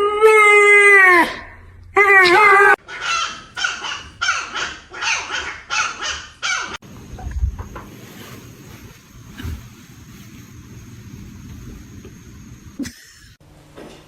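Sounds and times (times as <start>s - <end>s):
dog howling: 0.0s - 3.6s
dog yipping: 2.0s - 6.8s.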